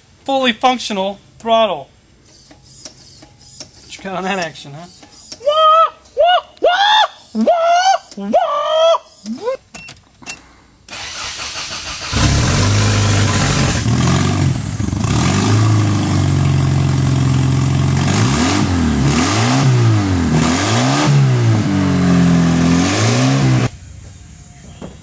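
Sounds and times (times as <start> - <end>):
car engine revving: 10.9 - 24.6
car engine cranking: 10.9 - 25.0.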